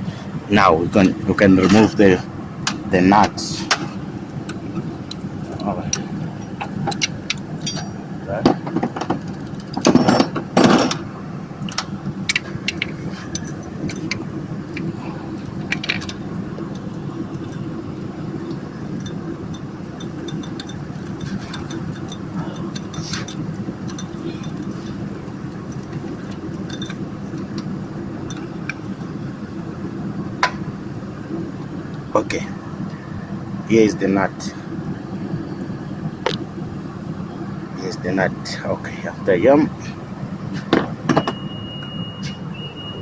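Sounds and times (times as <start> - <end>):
steady low hum: 0.0 - 43.0
hand tools clinking on metal: 7.0 - 8.0, 19.0 - 25.0.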